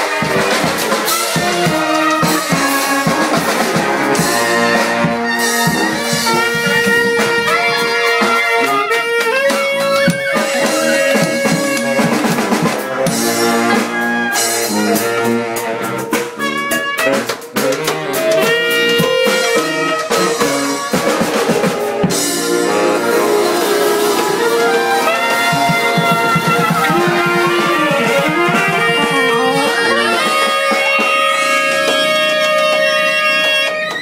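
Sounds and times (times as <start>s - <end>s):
snare and bass drum hits: 0.0s - 8.5s
brass band playing: 0.0s - 34.0s.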